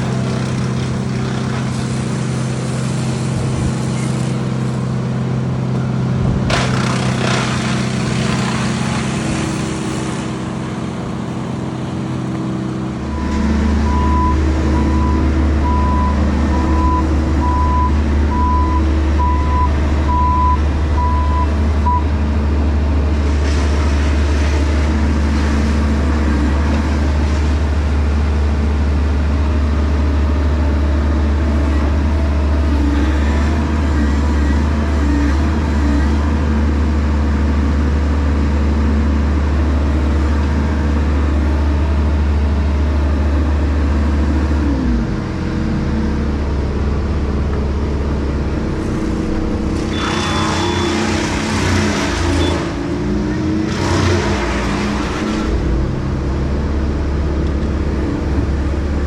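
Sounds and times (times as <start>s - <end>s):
heavy diesel equipment running: 0.0s - 59.0s
back-up alarm beeping: 13.2s - 22.1s.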